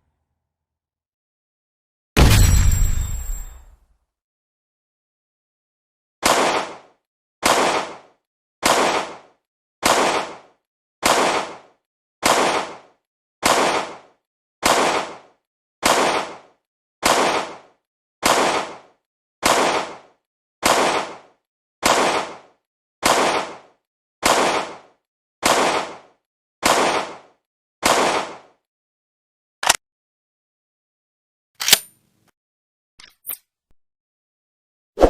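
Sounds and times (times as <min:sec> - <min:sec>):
pistol gunshots: 0:06.2 - 0:06.8, 0:07.4 - 0:08.0.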